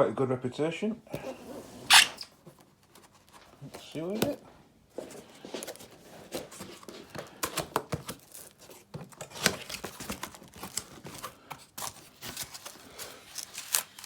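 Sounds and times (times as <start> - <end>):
packaging rustling and tearing: 5.6 - 14.0.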